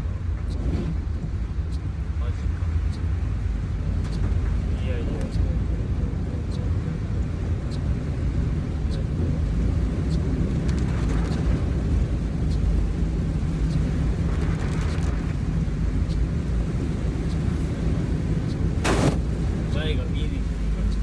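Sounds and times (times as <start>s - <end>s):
engine and tyre rumble: 0.0s - 21.0s
water rushing under tyres: 0.0s - 21.0s
faint ticks: 2.8s - 5.8s, 6.4s - 18.7s.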